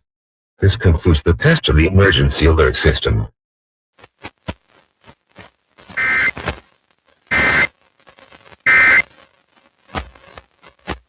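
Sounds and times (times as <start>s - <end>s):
harsh buzzing tone bursts: 4.8s - 11.0s.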